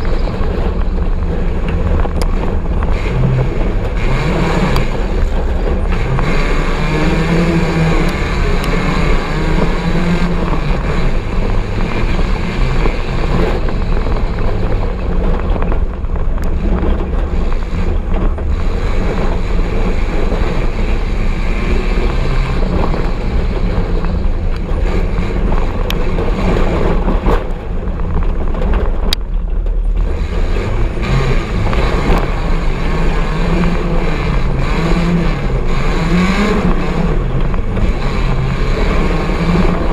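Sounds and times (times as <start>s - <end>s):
buggy engine revving: 0.0s - 39.9s
low rumble of wind and ground: 0.0s - 39.9s.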